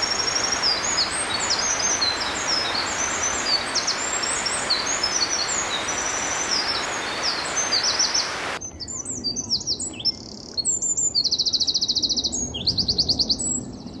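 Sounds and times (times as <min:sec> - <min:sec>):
steady rushing noise: 0:00.0 - 0:08.6
wren singing with trills: 0:00.0 - 0:08.6.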